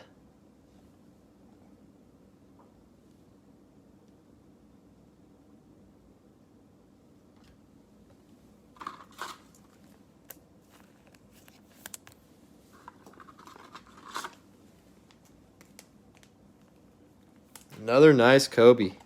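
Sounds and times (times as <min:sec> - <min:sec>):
card packaging crinkling: 0:12.8 - 0:16.8.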